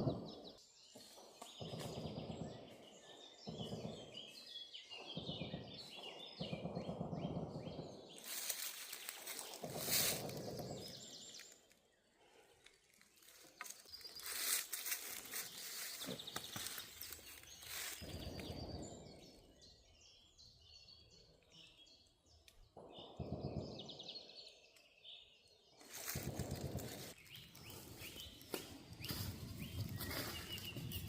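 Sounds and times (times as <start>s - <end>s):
rustling near microphone: 8.2s - 10.8s, 13.2s - 18.2s.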